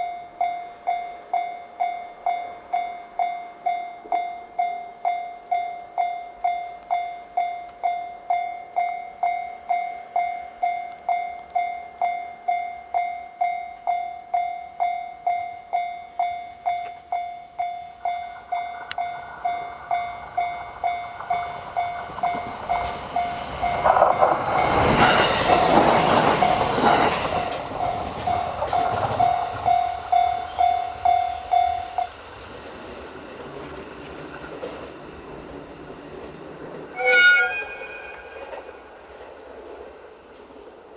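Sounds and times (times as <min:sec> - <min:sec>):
level-crossing alarm ringing: 0:00.0 - 0:38.7
train wheels running: 0:15.8 - 0:40.9.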